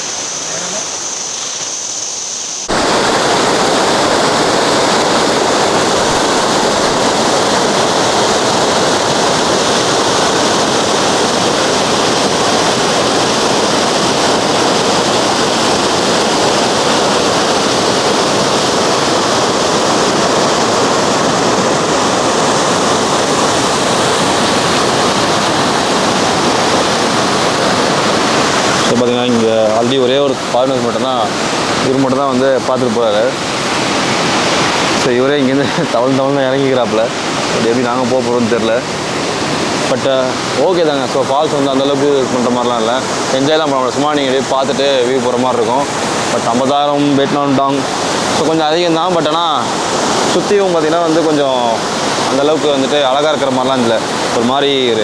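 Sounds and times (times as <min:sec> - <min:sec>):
waterfall pouring and crashing: 0:02.6 - 0:55.0.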